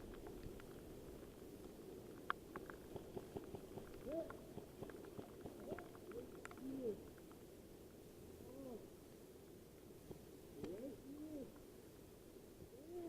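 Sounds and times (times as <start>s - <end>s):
rain pattering on gear: 0.0s - 7.5s
hoot-like calls: 10.6s - 11.6s.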